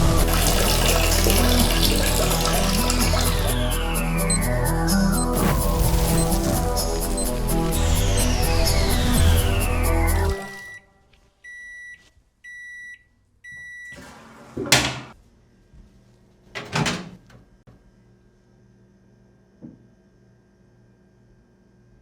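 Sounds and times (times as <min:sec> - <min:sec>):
music: 0:00.0 - 0:10.9
microwave oven beeps: 0:03.1 - 0:14.2.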